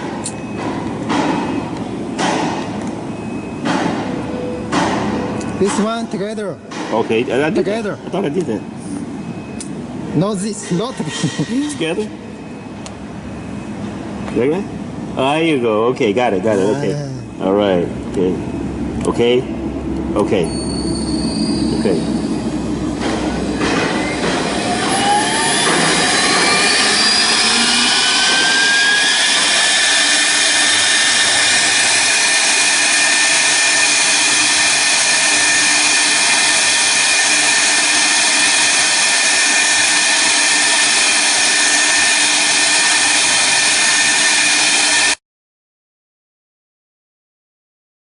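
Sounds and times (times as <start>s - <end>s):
router spindle whine: 20.5s - 45.2s.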